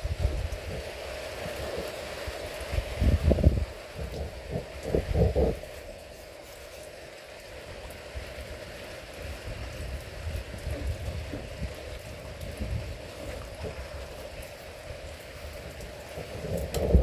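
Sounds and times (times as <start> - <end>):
steady rain falling: 0.0 - 17.0
low rumbles on microphone: 2.8 - 5.9, 15.6 - 17.0.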